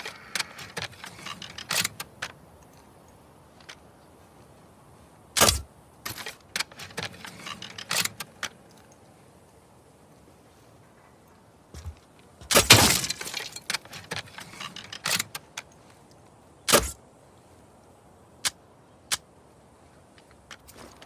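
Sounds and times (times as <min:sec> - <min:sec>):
crossbow mechanical clacks: 0:00.0 - 0:03.9, 0:05.4 - 0:09.1, 0:12.5 - 0:17.0
rattling clatter: 0:05.4 - 0:08.6, 0:12.5 - 0:15.5.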